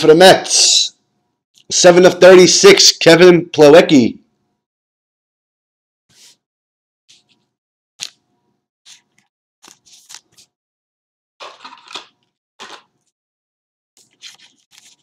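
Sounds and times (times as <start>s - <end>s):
cards and sleeves rustling: 8.9s - 10.5s, 14.0s - 15.0s.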